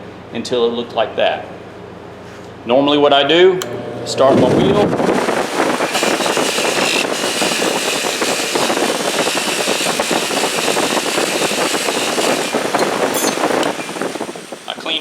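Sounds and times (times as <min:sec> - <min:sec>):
bench buffer rushing noise: 0:03.6 - 0:15.0.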